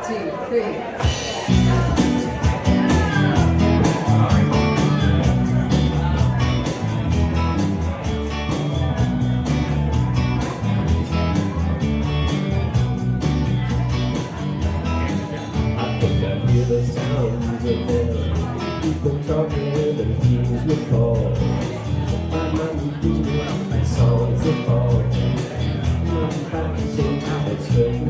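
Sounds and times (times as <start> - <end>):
rock band playing: 1.0 - 28.0.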